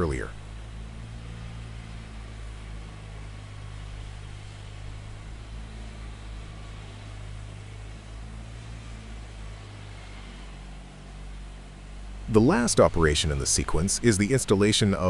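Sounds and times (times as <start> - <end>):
even hiss: 0.0 - 15.0
low mechanical hum: 0.0 - 15.0.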